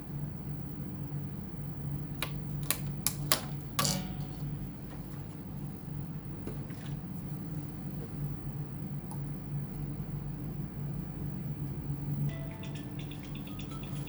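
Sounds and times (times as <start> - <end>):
steady low hum: 0.0 - 14.0
sharp clicks and taps: 2.2 - 4.1.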